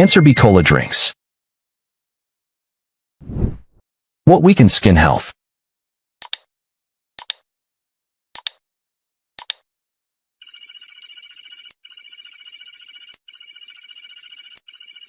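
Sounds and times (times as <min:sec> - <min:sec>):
high electronic alarm ringing: 0:10.4 - 0:15.0.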